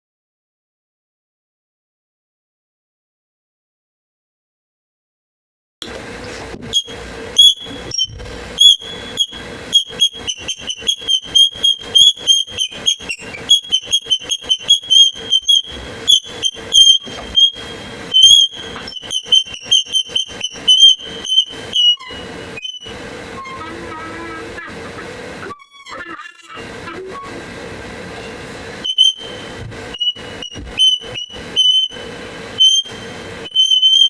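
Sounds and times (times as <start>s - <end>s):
stool squeaking: 5.9s - 24.4s, 28.2s - 32.0s, 32.6s - 34.0s.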